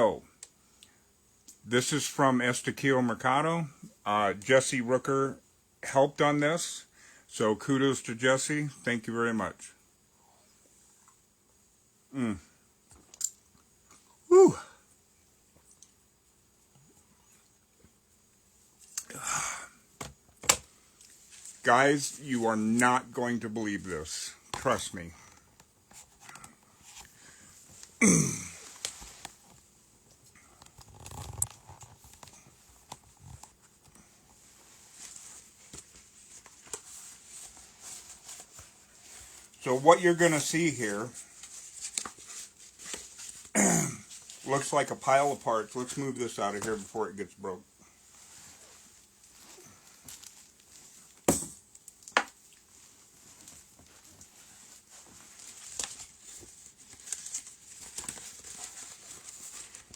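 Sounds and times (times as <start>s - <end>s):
rustling: 24.3s - 47.0s, 47.9s - 59.9s.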